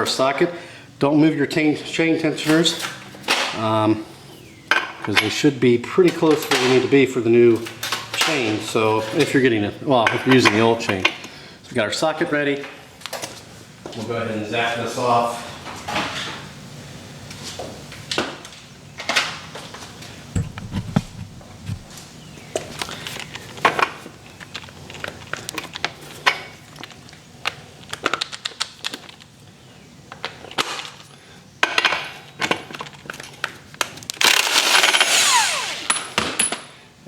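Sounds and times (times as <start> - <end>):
power tool whirring: 34.2 - 36.4.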